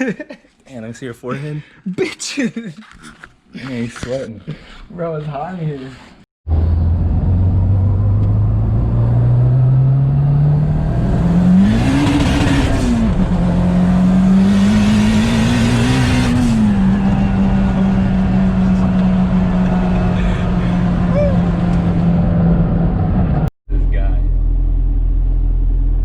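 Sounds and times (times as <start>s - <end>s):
car engine accelerating: 6.5s - 26.0s.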